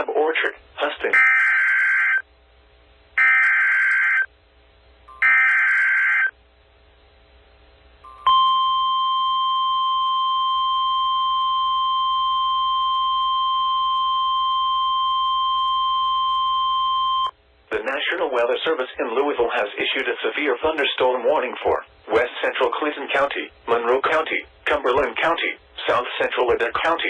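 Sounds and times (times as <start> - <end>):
steady high alarm tone: 1.1 - 2.2, 3.2 - 4.3, 5.1 - 6.4, 8.0 - 17.3.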